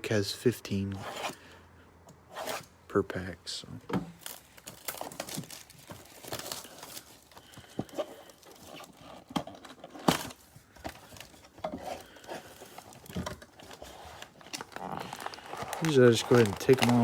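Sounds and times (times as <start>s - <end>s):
cellophane packs crinkling: 4.2s - 17.0s.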